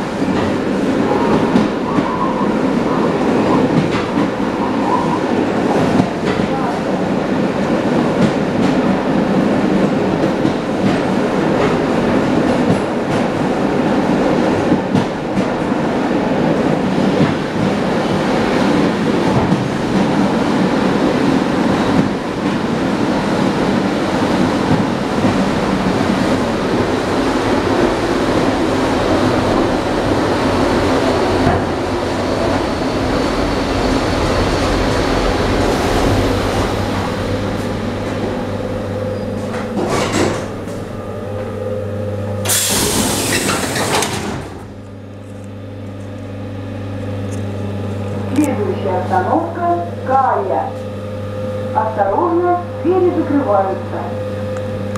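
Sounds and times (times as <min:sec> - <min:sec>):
train wheels rumbling on rail: 0:00.0 - 0:54.9.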